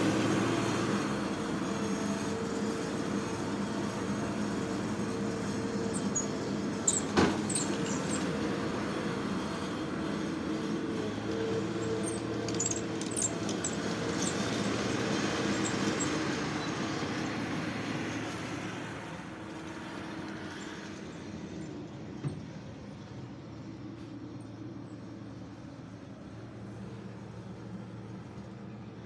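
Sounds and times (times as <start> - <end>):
skid steer engine under load: 0.0 - 22.6
sharp metallic clinks: 6.9 - 8.3, 11.8 - 14.9.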